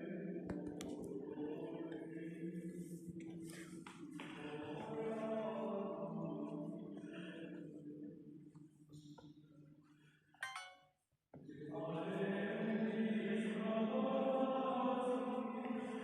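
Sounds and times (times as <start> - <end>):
choral chant: 0.0 - 8.6, 11.4 - 16.0
short bright chime: 10.4 - 10.9.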